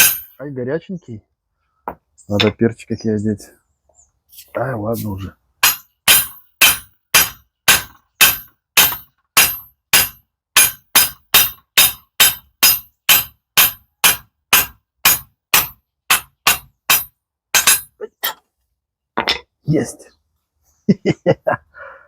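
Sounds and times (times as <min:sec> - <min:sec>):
hammer striking steel pipe: 0:00.0 - 0:00.4, 0:05.6 - 0:18.4.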